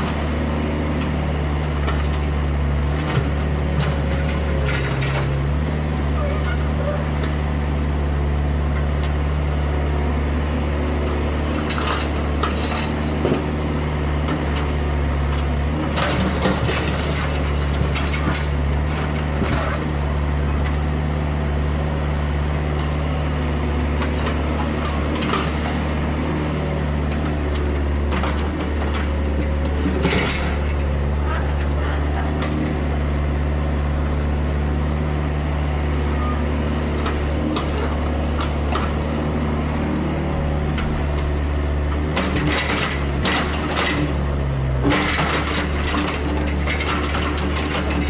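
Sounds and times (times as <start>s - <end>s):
excavator diesel engine droning: 0.0s - 48.0s
metallic clanks and debris crunches: 11.5s - 20.8s, 23.9s - 26.2s, 26.9s - 32.7s, 36.9s - 39.5s, 40.2s - 48.0s.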